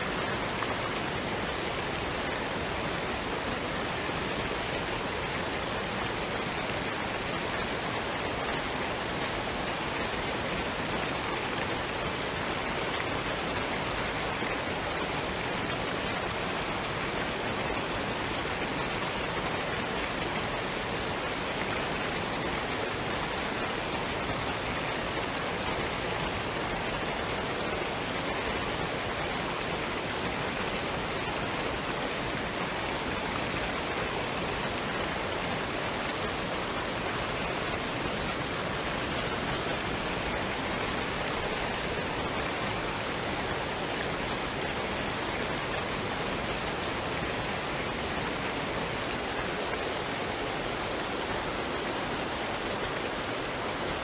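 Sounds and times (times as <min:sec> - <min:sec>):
waterfall and stream rushing: 0:00.0 - 0:54.0.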